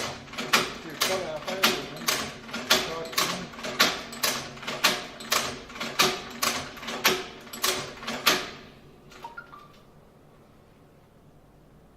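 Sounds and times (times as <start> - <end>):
stitching machine clacking: 0.0 - 9.5.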